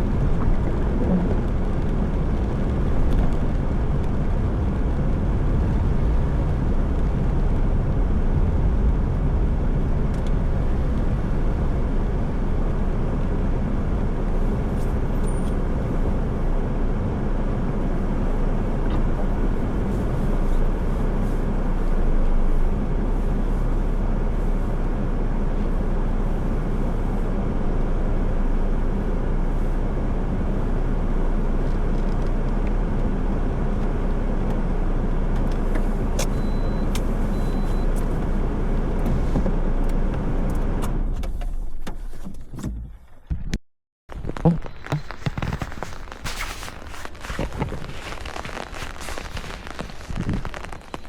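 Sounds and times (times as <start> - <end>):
car engine and road noise: 0.0 - 51.0
faint short beeps: 36.2 - 38.0.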